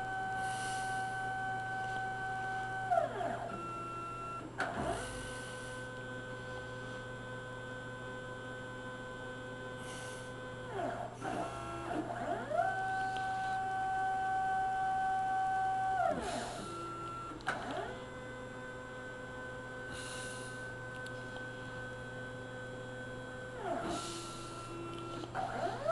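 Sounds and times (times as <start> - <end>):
stepper motors whining: 0.0 - 25.9
click: 17.0 - 17.9, 20.9 - 21.5, 24.9 - 25.8.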